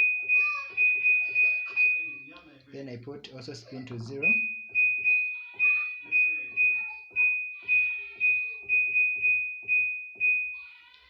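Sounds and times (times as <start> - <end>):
washing machine panel beeps: 0.0 - 2.6, 4.0 - 10.8.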